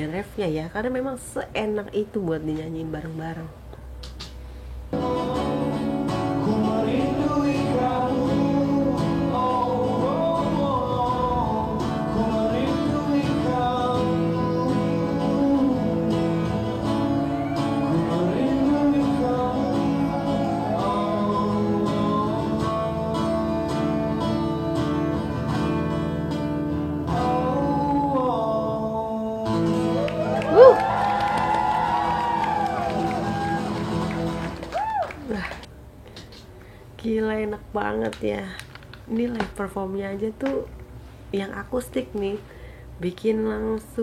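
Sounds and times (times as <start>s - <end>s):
acoustic guitar: 0.0s - 44.0s
man singing: 5.0s - 24.8s, 27.0s - 30.0s.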